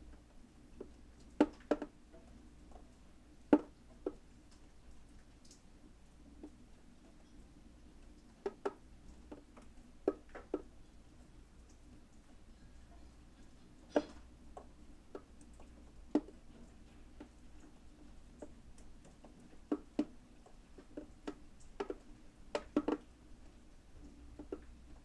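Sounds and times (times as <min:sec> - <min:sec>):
raindrops tapping: 0:00.0 - 0:25.0.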